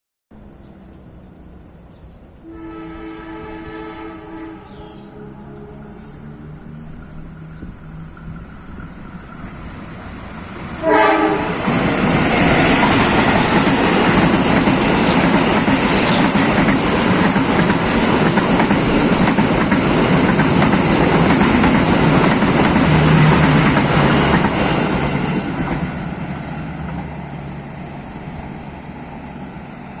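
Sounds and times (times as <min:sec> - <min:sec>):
train rumble and wheel clatter: 0:00.4 - 0:30.0
train horn: 0:02.4 - 0:07.0, 0:10.8 - 0:11.9.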